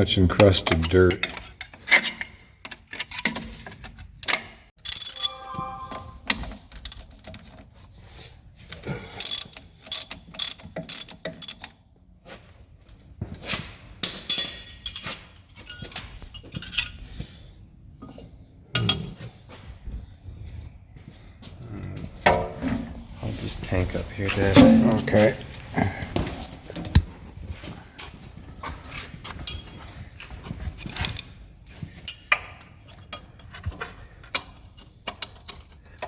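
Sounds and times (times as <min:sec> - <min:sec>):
ratchet wrench clicking: 0:09.2 - 0:11.7
metal tools clinking: 0:14.0 - 0:17.4, 0:18.0 - 0:19.3, 0:29.4 - 0:30.0, 0:30.8 - 0:36.0.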